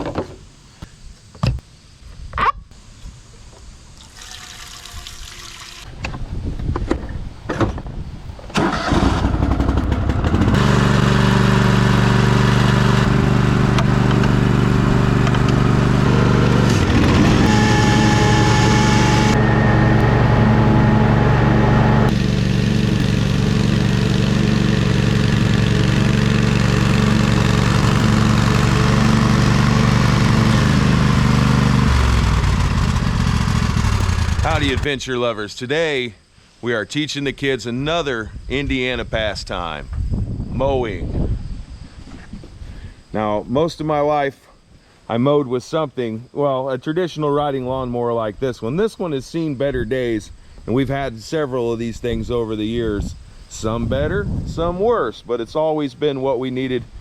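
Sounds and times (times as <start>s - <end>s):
riding lawn mower engine: 8.5s - 34.9s.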